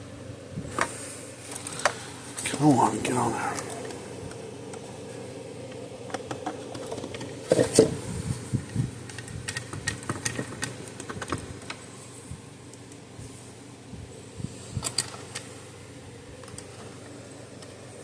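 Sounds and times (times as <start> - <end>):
faint steady hum: 0.0 - 18.0
plastic and metal parts clicking: 9.0 - 11.8.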